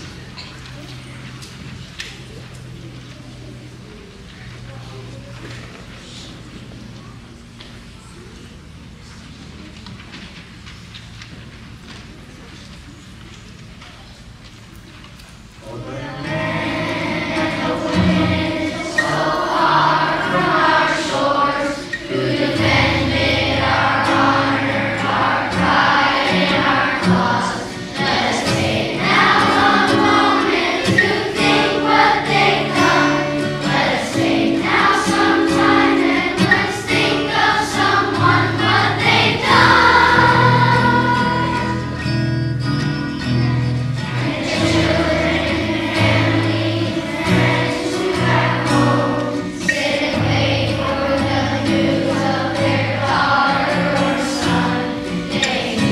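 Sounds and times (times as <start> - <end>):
children's choir singing: 0.0 - 4.3, 15.6 - 55.9
instrumental accompaniment: 16.1 - 55.9.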